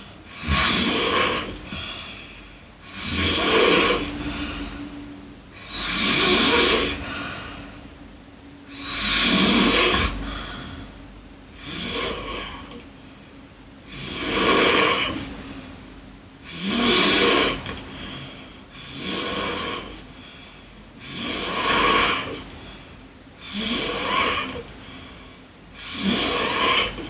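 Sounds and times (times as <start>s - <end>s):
girl snoring: 0.3s - 5.0s, 5.6s - 7.8s, 8.7s - 12.8s, 13.9s - 15.3s, 16.4s - 20.1s, 21.0s - 22.5s, 23.4s - 27.0s.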